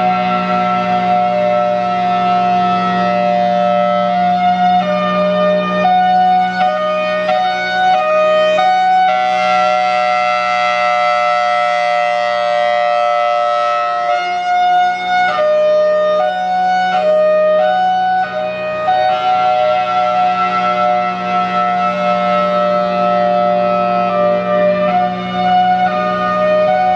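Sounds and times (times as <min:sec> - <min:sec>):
two-tone siren wail: 0:00.0 - 0:26.9
steady low drone: 0:14.0 - 0:26.9.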